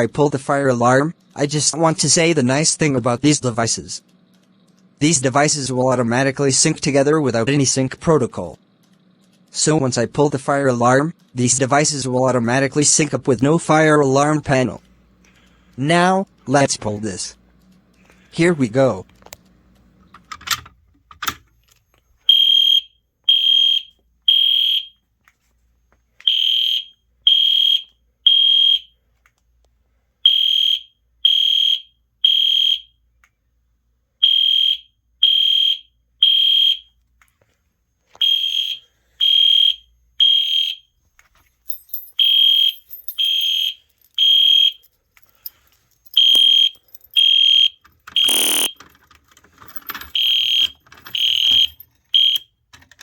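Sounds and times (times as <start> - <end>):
sharp clicks: 4.0 - 4.9, 8.8 - 9.6, 46.1 - 49.2
high-pitched alarm horn blasts: 22.3 - 25.0, 26.3 - 28.9, 30.3 - 32.9, 34.2 - 36.8, 38.2 - 40.9, 42.2 - 44.8, 46.2 - 48.8, 50.2 - 52.4.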